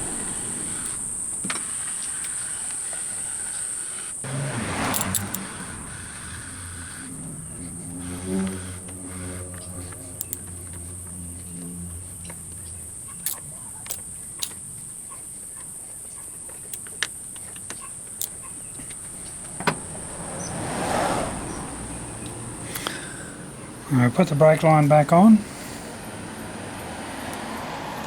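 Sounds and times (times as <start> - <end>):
low droning: 0.0 - 15.3, 18.3 - 28.0
tools clicking on metal: 4.9 - 5.4, 13.2 - 14.6.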